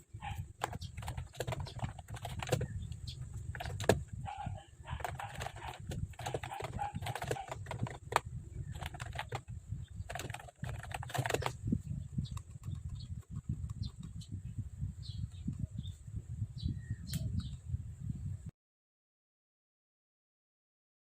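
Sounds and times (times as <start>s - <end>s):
keyboard typing clicks: 0.6s - 2.7s, 3.5s - 4.0s, 5.0s - 9.5s, 10.1s - 11.6s, 12.2s - 14.2s.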